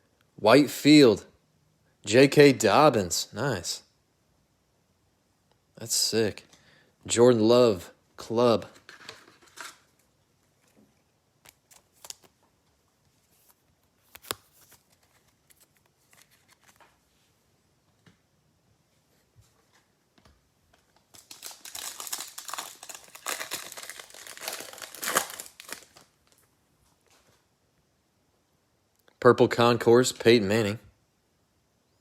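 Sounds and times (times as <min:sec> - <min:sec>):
trading cards clicking and rustling: 0:11.4 - 0:12.4, 0:13.1 - 0:17.0
wrapper tearing and crinkling: 0:11.5 - 0:12.3, 0:21.1 - 0:26.4.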